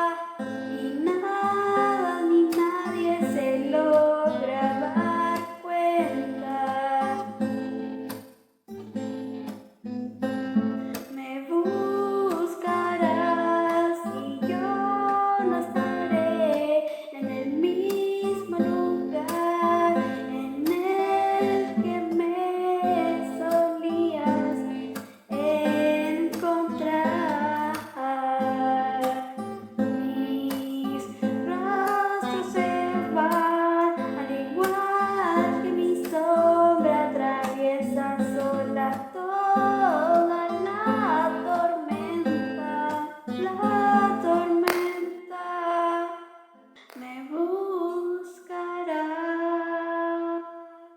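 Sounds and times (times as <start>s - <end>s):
woman singing: 0.0s - 8.1s, 10.9s - 50.9s
guitar playing: 0.0s - 45.4s.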